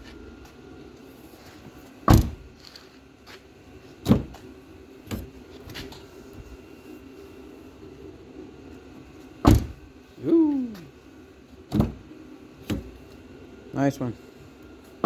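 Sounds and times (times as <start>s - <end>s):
low steady hum: 0.0s - 15.0s
car door latch clunks: 2.1s - 2.5s, 4.0s - 4.4s, 5.1s - 5.4s, 9.4s - 9.9s, 11.7s - 13.0s.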